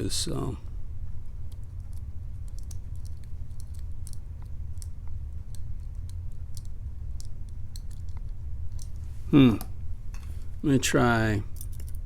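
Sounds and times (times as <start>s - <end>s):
steady low hum: 0.0s - 12.0s
metal lockpicking tools clicking: 11.6s - 12.0s.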